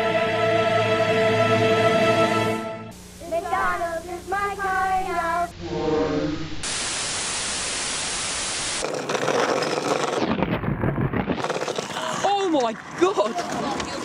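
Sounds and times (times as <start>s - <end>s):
low hum: 2.5s - 6.8s
static hiss: 2.9s - 5.5s, 6.4s - 9.0s
crackling noise: 3.0s - 14.0s.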